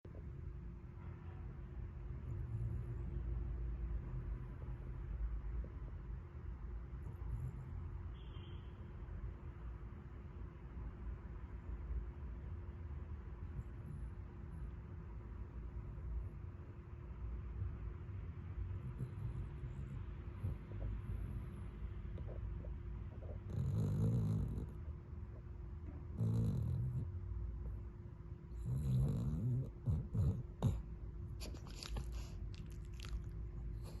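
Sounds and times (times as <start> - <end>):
light snoring: 18.7 - 24.9, 26.1 - 27.2, 28.5 - 31.0.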